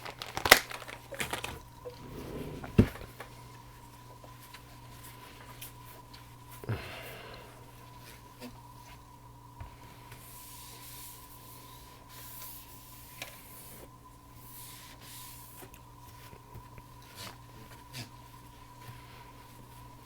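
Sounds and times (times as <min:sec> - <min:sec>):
rubbing and rustling: 0:00.0 - 0:03.2
electrical hum: 0:00.0 - 0:10.1.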